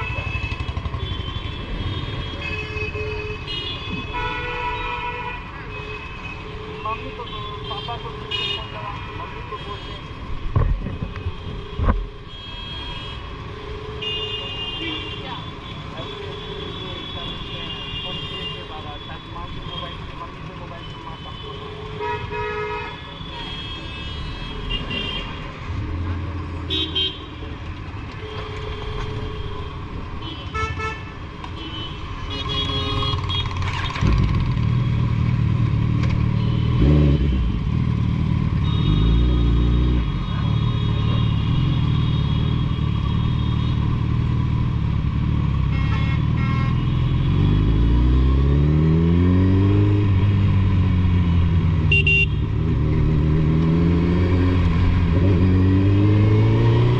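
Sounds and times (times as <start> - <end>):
motorcycle engine revving: 0.0 - 2.3, 32.7 - 56.9
traffic horns tooting: 0.0 - 10.2, 10.8 - 25.8, 26.6 - 34.2, 36.2 - 37.6, 38.5 - 44.3, 45.5 - 47.9, 51.2 - 52.8.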